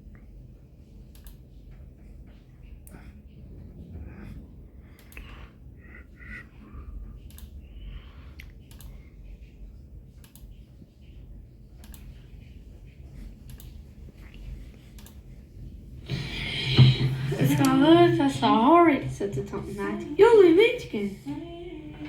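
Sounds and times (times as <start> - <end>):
light clicks and taps: 10.1 - 15.3
faint voice: 16.1 - 22.0.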